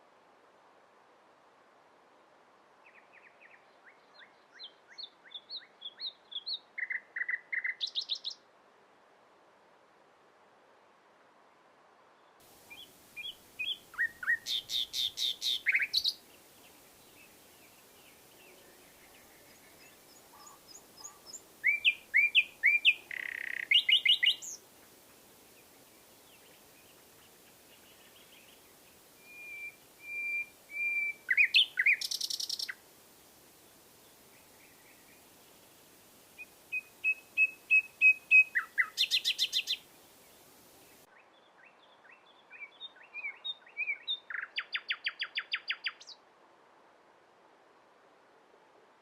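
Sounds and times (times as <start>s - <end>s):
nightingale singing: 2.8s - 8.4s, 12.6s - 32.9s, 36.3s - 46.2s.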